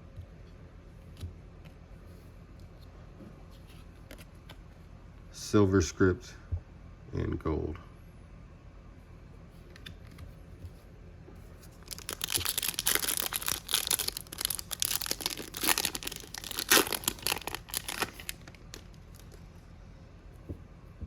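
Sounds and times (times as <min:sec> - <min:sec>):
wrapper tearing and crinkling: 0:11.7 - 0:19.4.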